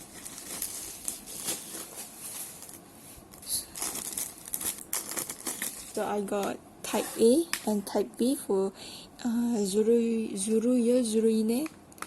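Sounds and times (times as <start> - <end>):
cd packaging rustling: 0.0 - 2.8, 3.7 - 6.2.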